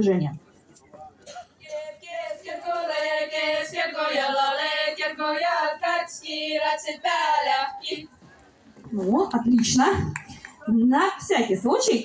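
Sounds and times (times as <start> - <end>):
women singing a folk chorus: 1.5 - 8.3.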